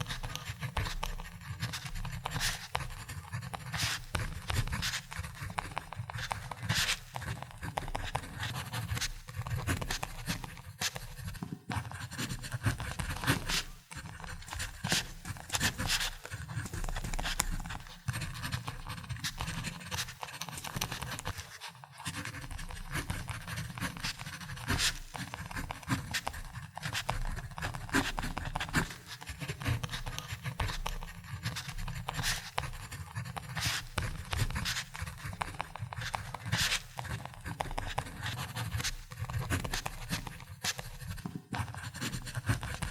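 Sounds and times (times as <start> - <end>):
pen tapping: 0.0 - 21.3
pen scratching on paper: 0.0 - 42.9.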